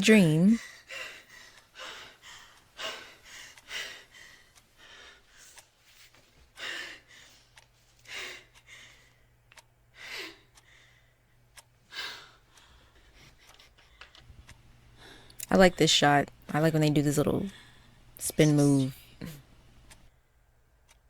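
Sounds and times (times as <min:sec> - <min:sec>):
woman gasping breaths: 0:06.5 - 0:09.3, 0:10.0 - 0:11.3, 0:11.9 - 0:14.2, 0:14.9 - 0:15.4.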